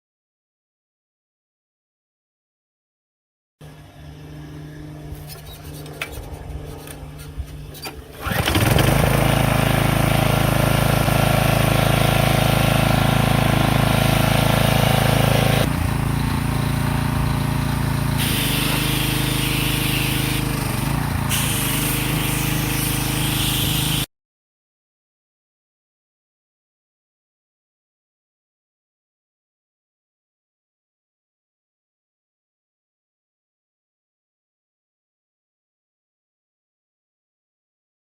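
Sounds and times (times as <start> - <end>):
pressure washer engine running: 3.7 - 24.1.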